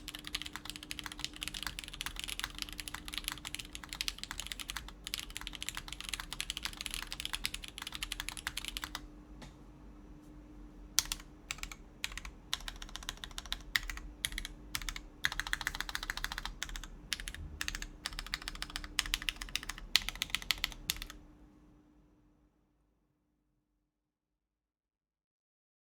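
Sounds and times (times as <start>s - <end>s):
clicky keyboard typing: 0.0s - 9.0s, 11.0s - 21.2s.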